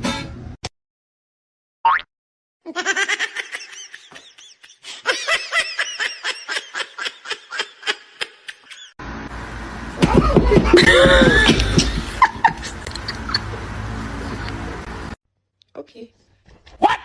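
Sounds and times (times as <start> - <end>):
person laughing hard: 2.7 - 8.9, 10.0 - 13.6.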